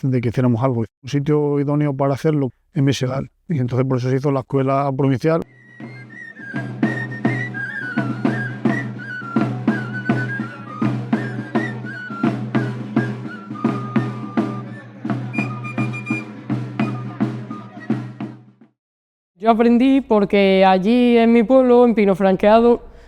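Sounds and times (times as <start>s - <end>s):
high pipe melody: 5.5s - 18.2s
steady drum beats: 5.6s - 18.7s.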